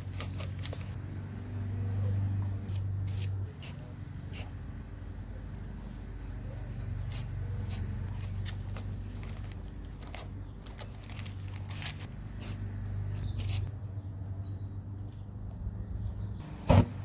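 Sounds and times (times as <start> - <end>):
steady low hum: 15.4 - 17.0.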